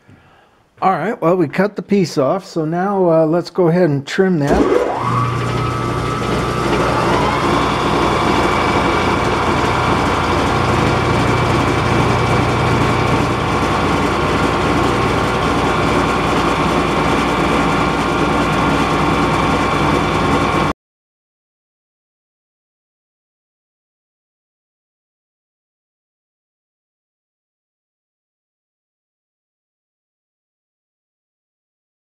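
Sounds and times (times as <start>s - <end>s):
electric motor whining: 4.5s - 20.7s.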